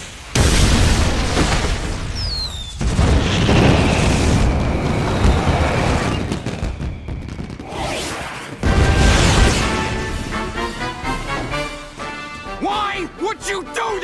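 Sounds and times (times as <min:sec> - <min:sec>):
fireworks booming: 0:00.3 - 0:10.4.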